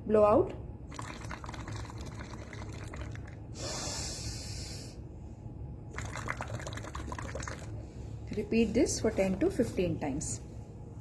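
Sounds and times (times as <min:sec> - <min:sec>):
bubbling water through straw: 0:00.9 - 0:03.5, 0:05.9 - 0:07.8
loud hiss of breath: 0:03.6 - 0:05.0.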